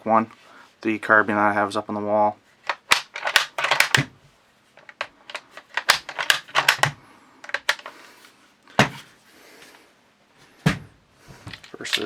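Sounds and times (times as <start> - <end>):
rifle metallic clicks and rattles: 2.6 - 4.1, 4.8 - 8.0.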